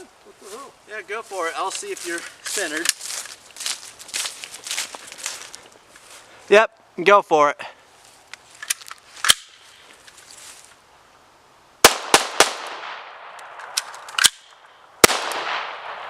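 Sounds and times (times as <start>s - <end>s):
submachine gun shots with echo: 15.0s - 16.0s.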